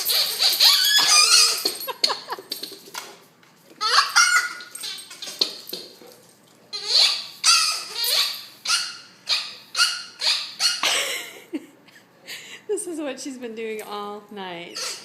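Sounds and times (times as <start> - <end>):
squeaky dog toy squeaking: 0.0 - 1.8, 3.8 - 5.3, 6.7 - 10.8, 14.7 - 15.0.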